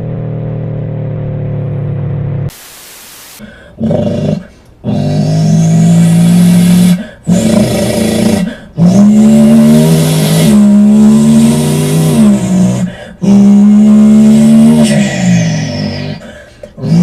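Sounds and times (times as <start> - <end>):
person imitating car engine: 3.4 - 17.0.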